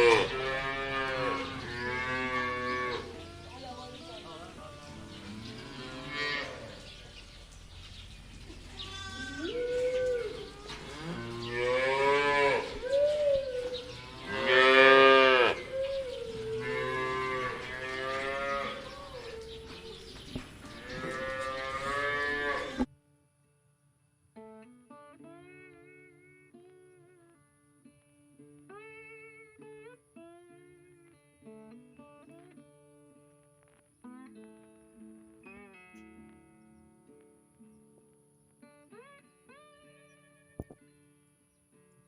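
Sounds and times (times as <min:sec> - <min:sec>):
cattle mooing: 0:00.0 - 0:03.6, 0:04.8 - 0:06.9, 0:08.7 - 0:19.5, 0:20.7 - 0:22.9
plucked guitar tune: 0:00.0 - 0:17.8, 0:22.8 - 0:42.0.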